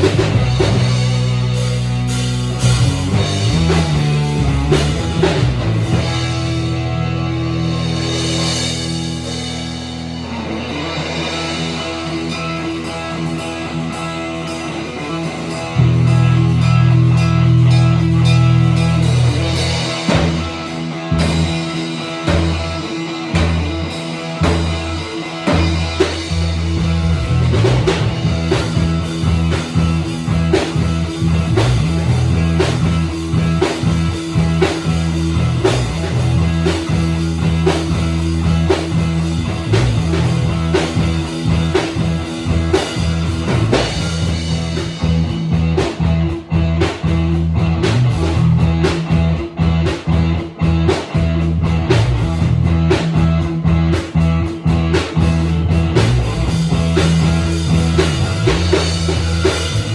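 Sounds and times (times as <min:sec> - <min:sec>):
low bass guitar notes: 0:00.0 - 0:59.9
rock band jamming: 0:00.0 - 0:59.9
steady drum beat: 0:00.0 - 0:59.9.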